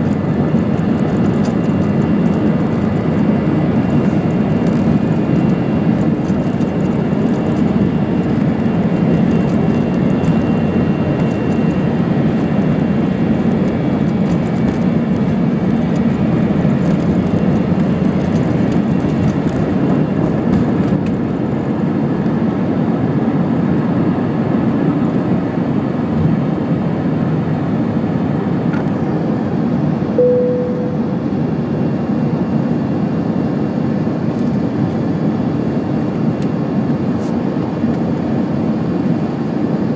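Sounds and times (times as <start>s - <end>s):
jet engines rumbling in cabin: 0.0s - 39.9s
short tone: 30.2s - 31.4s.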